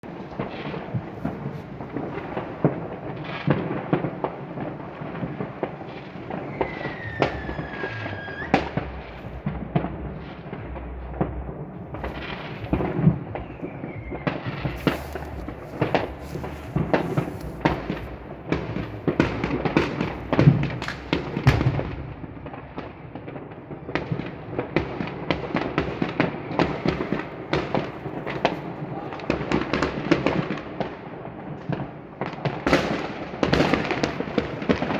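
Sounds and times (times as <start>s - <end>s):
fireworks bangs and crackles: 0.0s - 34.9s
whistling firework falling in pitch: 3.8s - 10.8s, 11.9s - 22.3s.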